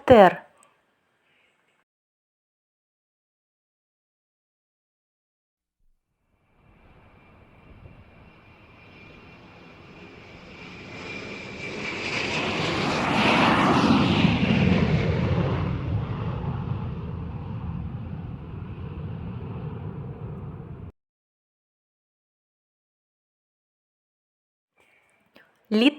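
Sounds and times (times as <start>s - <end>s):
airplane flying past: 6.4s - 20.9s.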